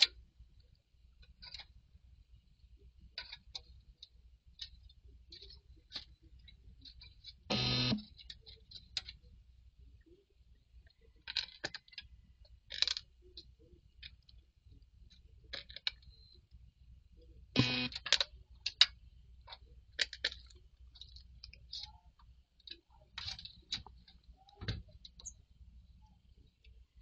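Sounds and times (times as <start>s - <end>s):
bird calling with buzzy rasping notes: 17.6s - 18.0s.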